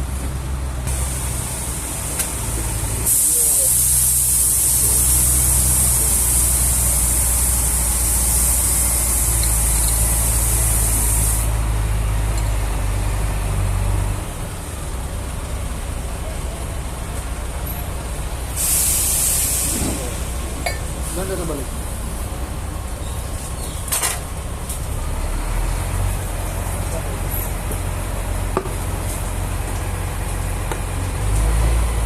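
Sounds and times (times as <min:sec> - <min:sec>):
loud hiss of air: 0:00.9 - 0:11.6, 0:18.4 - 0:22.1.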